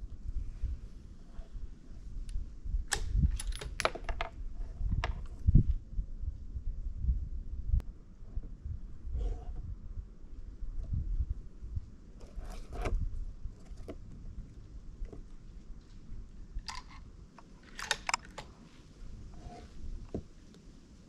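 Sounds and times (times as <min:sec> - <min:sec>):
handling clicks and scrapes: 0:02.2 - 0:05.4, 0:09.1 - 0:09.7, 0:12.2 - 0:20.3.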